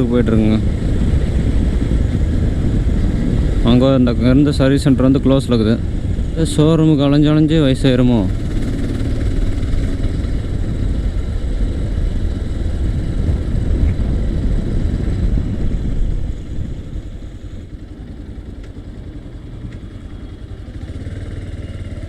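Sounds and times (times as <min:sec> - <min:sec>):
motorcycle engine running: 0:00.0 - 0:22.0.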